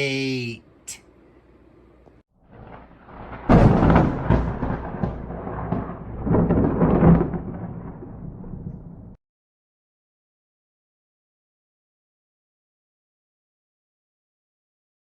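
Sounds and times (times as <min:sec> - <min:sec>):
thunder crack and rumble: 0:02.4 - 0:09.2.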